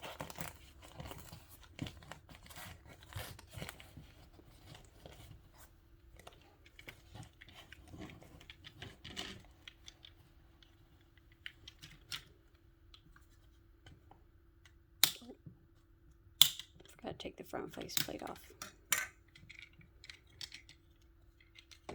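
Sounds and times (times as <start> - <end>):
plastic parts clicking and scraping: 0.0 - 15.3, 17.7 - 21.9
sharp plastic click: 16.4 - 16.9.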